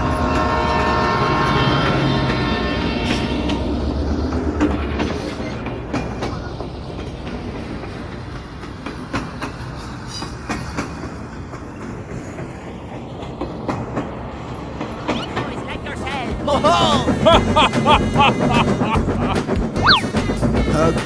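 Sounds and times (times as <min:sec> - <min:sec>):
train wheels clacking on rails: 0:04.8 - 0:14.5.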